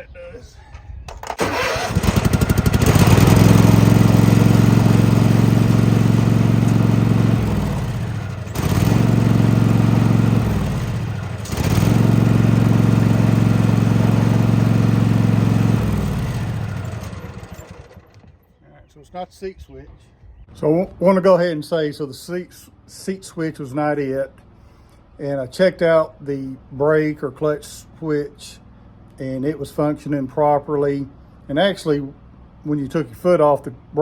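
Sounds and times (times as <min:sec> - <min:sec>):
riding mower engine starting and dying: 0:01.1 - 0:18.5.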